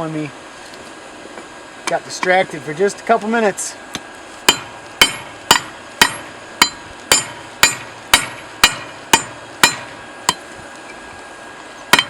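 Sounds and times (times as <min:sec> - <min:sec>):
hammer striking hot steel: 0:03.9 - 0:10.5.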